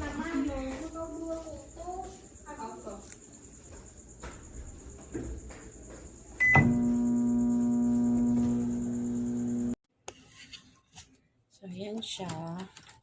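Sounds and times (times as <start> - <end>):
microwave oven humming: 6.4 - 9.8.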